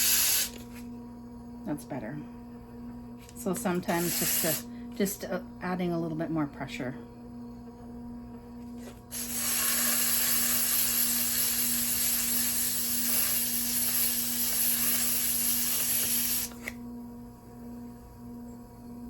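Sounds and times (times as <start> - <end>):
sanding pad hissing on pot: 0.0 - 0.8, 3.7 - 4.6, 8.7 - 16.7.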